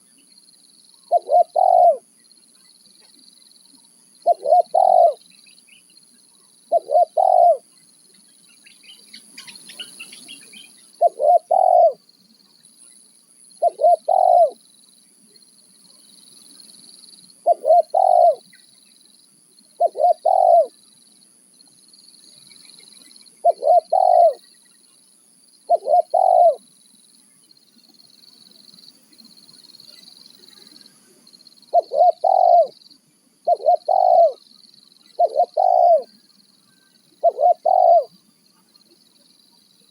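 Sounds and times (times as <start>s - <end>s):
faint high-pitched hiss: 0.0s - 39.9s
dove cooing: 1.1s - 2.1s, 4.2s - 5.2s, 6.7s - 7.7s, 11.0s - 12.0s, 13.6s - 14.6s, 17.4s - 18.5s, 19.8s - 20.8s, 23.4s - 24.4s, 25.7s - 26.7s, 31.7s - 32.8s, 33.4s - 34.4s, 35.2s - 36.1s, 37.2s - 38.2s.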